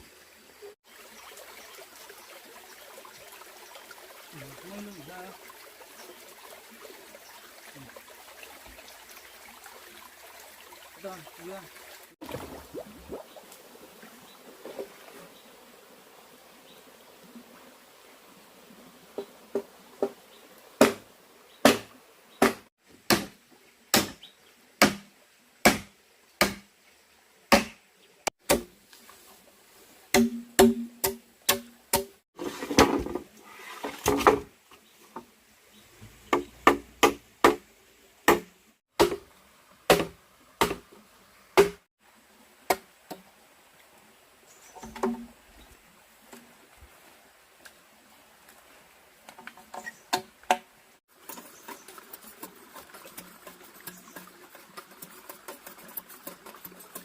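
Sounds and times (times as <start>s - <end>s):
hand tool striking: 30.2s - 32.1s.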